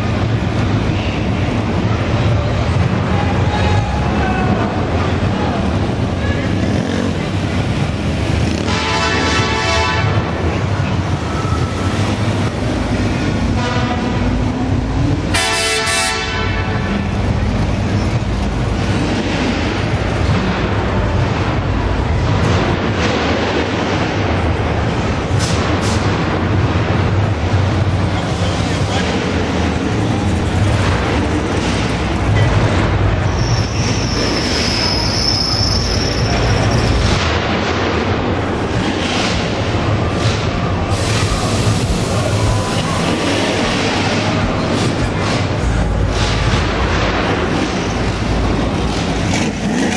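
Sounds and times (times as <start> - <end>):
muscle car engines rumbling: 0.0 - 49.9
vehicle horn: 8.5 - 10.3, 13.5 - 14.4, 15.3 - 17.1
high steady squeal: 33.3 - 37.0.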